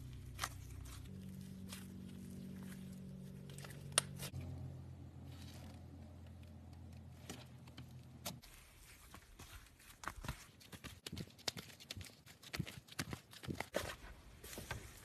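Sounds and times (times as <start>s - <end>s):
low steady hum: 0.0s - 9.8s.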